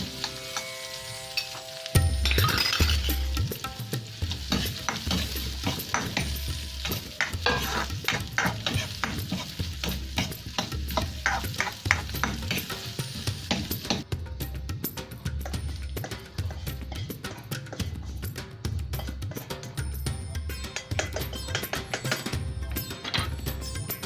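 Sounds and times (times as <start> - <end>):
meat sizzling in a pan: 0.0 - 14.1, 14.8 - 24.0
utensil clicking and scraping pan: 4.3 - 12.7, 16.0 - 18.3, 20.6 - 22.3.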